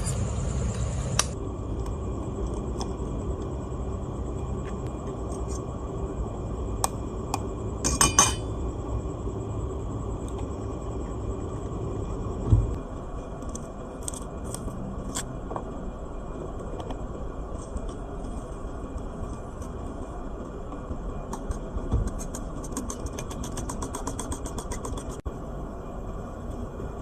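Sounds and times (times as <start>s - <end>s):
low rumbling background: 0.0s - 22.6s
glassware and dishes clinking: 7.8s - 8.6s.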